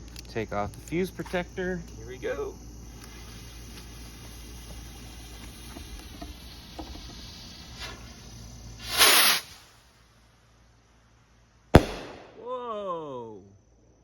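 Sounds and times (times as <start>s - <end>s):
firework fuse fizzing: 0.0s - 12.5s
crickets chirping: 0.0s - 14.0s
rocket launch whoosh: 8.8s - 9.7s, 11.8s - 12.4s.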